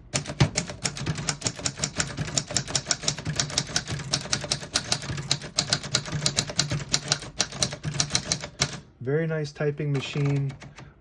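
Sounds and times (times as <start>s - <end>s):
manual typewriter typing: 0.0s - 8.8s, 9.8s - 10.9s.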